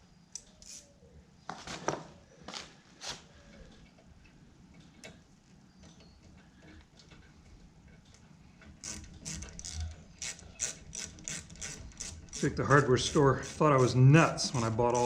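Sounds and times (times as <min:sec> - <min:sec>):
hand ratchet clicking: 0:08.6 - 0:15.0.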